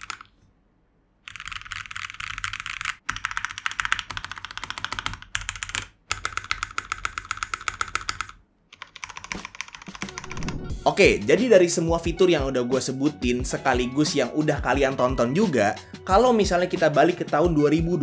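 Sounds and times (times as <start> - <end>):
fast typing on mechanical keyboard: 0.0 - 0.3, 1.2 - 10.6.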